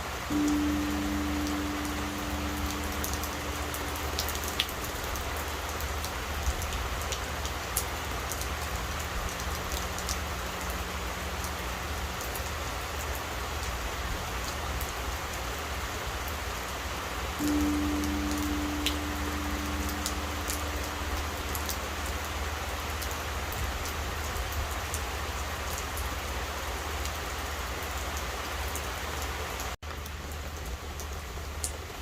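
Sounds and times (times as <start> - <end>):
steady rain: 0.0 - 32.0
temple bell hum: 0.3 - 6.2, 17.4 - 23.4.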